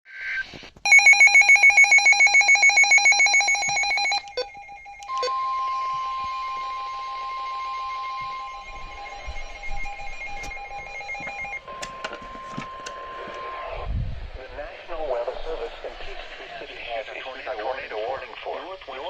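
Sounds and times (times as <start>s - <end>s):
steady warning alarm tone: 0.9s - 13.8s
faint radio hiss: 11.7s - 19.0s.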